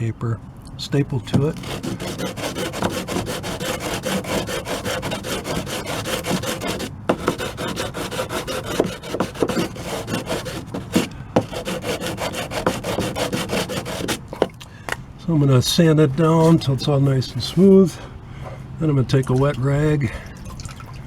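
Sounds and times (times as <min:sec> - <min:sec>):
sandpaper scraping on wood: 0:01.3 - 0:14.3.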